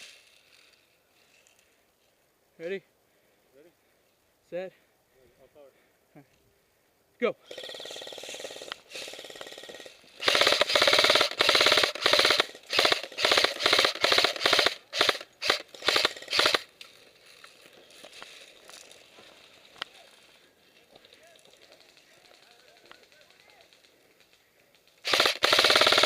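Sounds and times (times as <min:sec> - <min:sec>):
airsoft rifle firing bursts: 0:07.5 - 0:16.7, 0:24.9 - 0:26.0.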